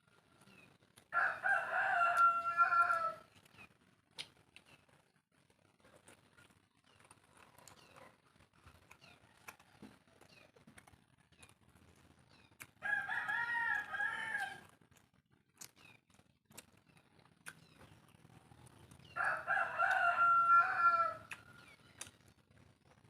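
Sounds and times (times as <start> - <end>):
rooster crowing: 1.1 - 3.3, 12.8 - 14.7, 19.2 - 21.6
person eating clicks and smacks: 3.3 - 4.8, 8.6 - 12.8, 13.7 - 19.1, 21.3 - 22.4.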